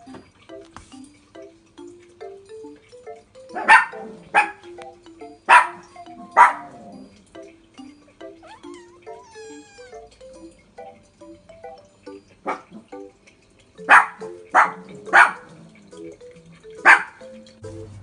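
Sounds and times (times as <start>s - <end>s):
light background music: 0.0s - 18.0s
kitten meowing: 8.4s - 10.0s.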